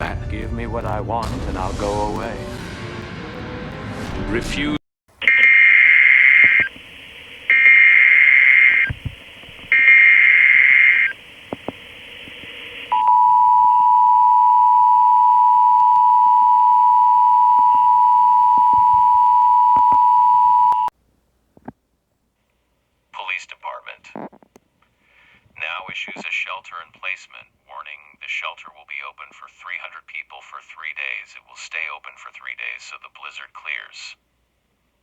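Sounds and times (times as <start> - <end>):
two-tone attention signal: 5.2 - 6.7, 7.5 - 9.0, 9.7 - 11.2, 12.6 - 20.9
buzzing digital data bursts: 5.2 - 13.0.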